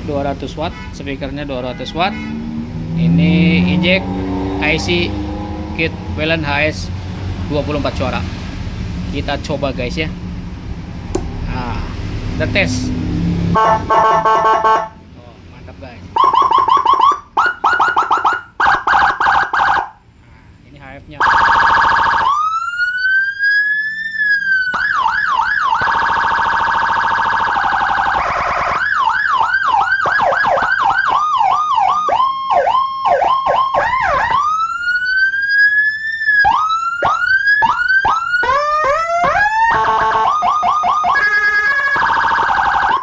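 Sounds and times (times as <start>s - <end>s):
police siren wailing and yelping: 13.5s - 15.0s, 16.2s - 20.0s, 21.2s - 43.0s.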